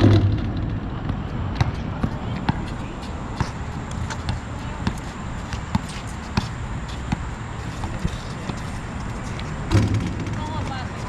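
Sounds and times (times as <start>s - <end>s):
steady background noise: 0.0s - 11.0s
basketball bouncing on hard court: 3.4s - 6.5s.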